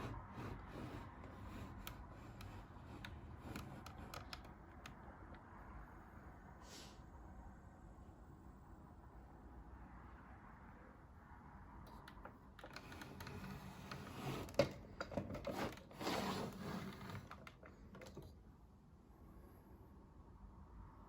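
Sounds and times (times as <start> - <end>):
plastic parts clicking and rattling: 1.3 - 5.0, 12.1 - 18.3.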